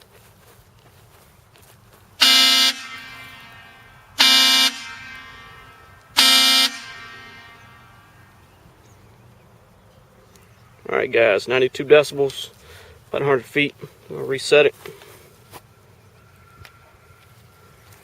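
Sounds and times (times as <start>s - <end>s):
train horn blasts: 2.2s - 8.7s
horn echo: 2.2s - 8.8s.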